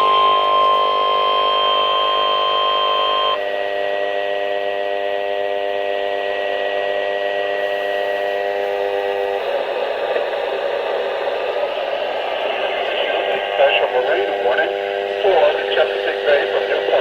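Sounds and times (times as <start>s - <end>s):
radio static hiss: 9.4s - 17.0s.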